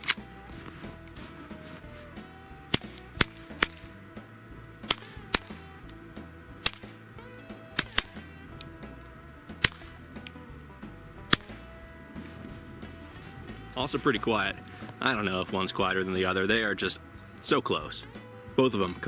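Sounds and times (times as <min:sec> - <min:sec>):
suppressed pistol shots: 0:02.7 - 0:03.9, 0:04.8 - 0:05.8, 0:06.6 - 0:07.0, 0:07.8 - 0:08.3, 0:09.6 - 0:10.0, 0:11.3 - 0:11.6.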